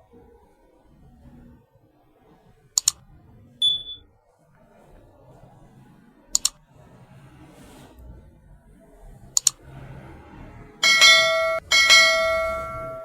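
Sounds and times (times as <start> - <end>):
smoke detector beep: 3.6 - 4.0
sharp clicks: 6.4 - 6.6, 9.4 - 9.6.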